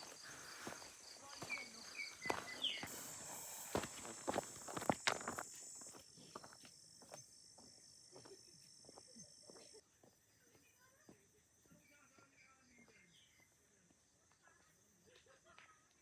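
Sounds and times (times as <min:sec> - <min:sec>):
high insect buzz: 0:00.0 - 0:06.5
footsteps on rocky trail: 0:00.0 - 0:07.8.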